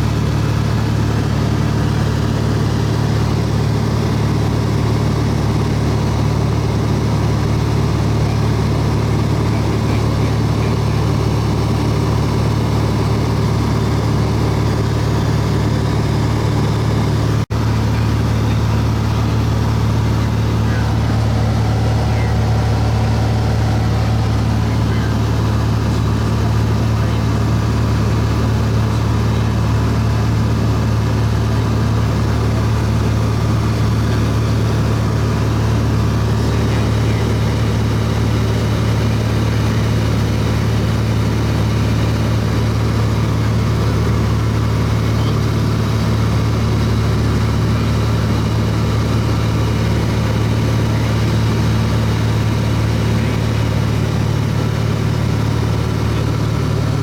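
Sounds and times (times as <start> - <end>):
light aircraft engine and propeller droning: 0.0 - 57.0.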